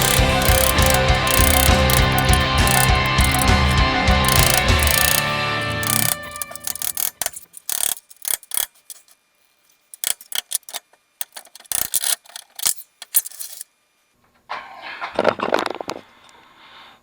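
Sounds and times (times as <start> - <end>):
metal tools clicking and clinking: 0.0 - 9.2, 9.8 - 13.7.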